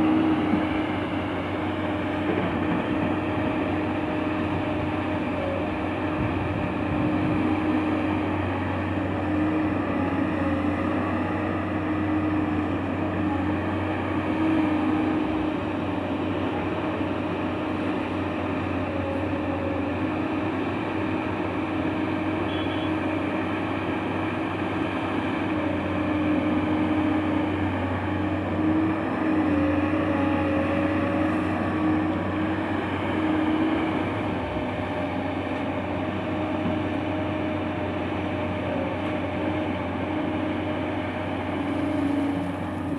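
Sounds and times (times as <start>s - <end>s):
excavator engine running: 0.0s - 42.9s.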